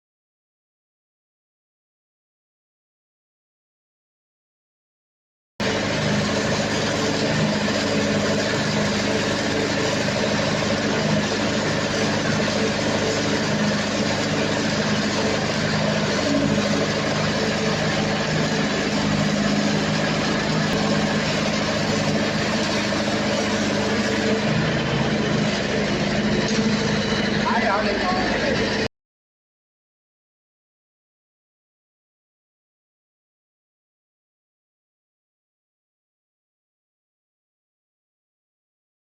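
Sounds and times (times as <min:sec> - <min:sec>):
welder generator diesel engine: 0:05.6 - 0:28.9.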